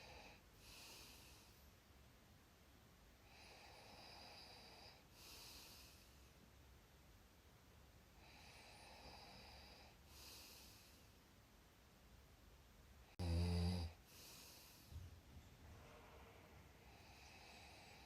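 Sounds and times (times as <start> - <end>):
faint snoring: 0.0 - 1.5, 3.2 - 6.2, 8.2 - 11.1, 13.1 - 15.0, 16.8 - 18.0
person breathing slowly: 0.0 - 1.7, 3.2 - 6.4, 8.2 - 11.2, 13.9 - 18.0.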